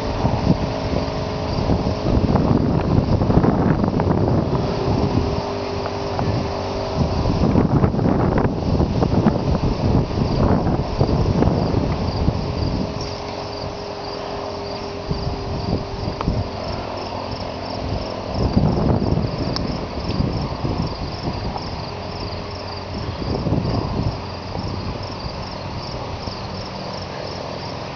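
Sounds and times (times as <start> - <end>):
crickets chirping: 0.0 - 27.9
wind buffeting microphone: 0.0 - 27.9.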